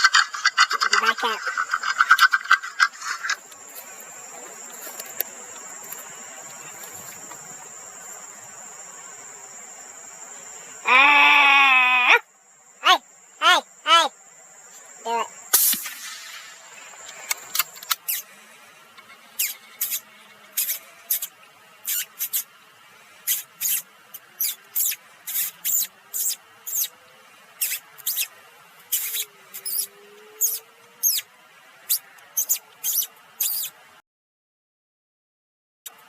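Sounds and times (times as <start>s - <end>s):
short high-pitched squeaks: 17.6s - 18.3s, 19.0s - 22.5s, 23.3s - 26.9s, 27.6s - 28.3s, 28.9s - 31.3s, 31.9s - 33.8s.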